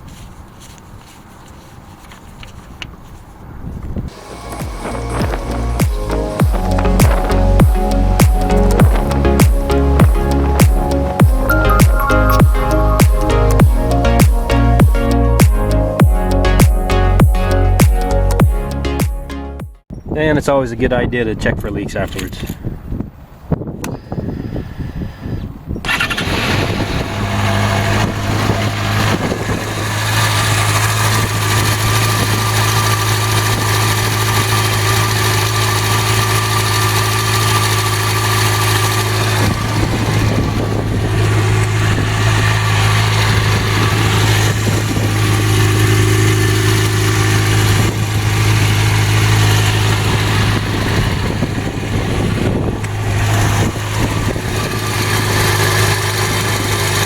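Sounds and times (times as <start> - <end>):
motorcycle engine starting and idling: 4.1 - 16.4, 25.8 - 57.0.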